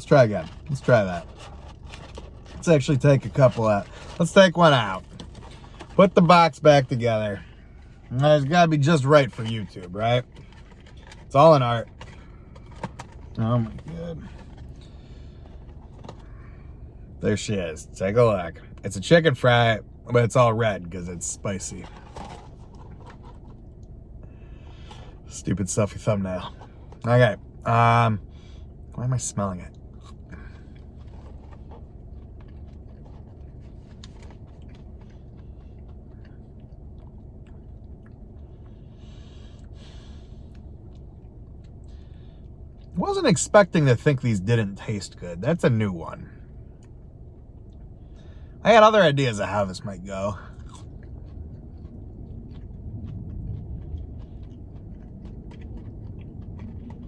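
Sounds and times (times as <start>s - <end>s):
steady low rumble: 0.0s - 57.0s
person chewing crunchy food: 29.8s - 42.9s, 50.5s - 57.0s.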